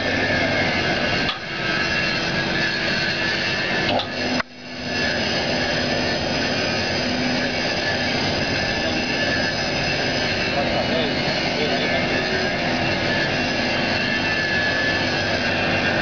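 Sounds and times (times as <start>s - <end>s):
workshop machinery running: 0.0s - 16.0s.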